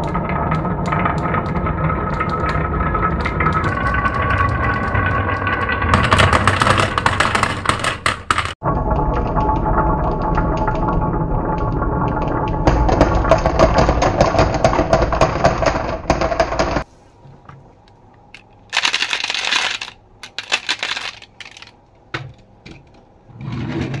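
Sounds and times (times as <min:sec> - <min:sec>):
marbles rolling and clicking: 0:00.0 - 0:16.9, 0:18.2 - 0:21.8.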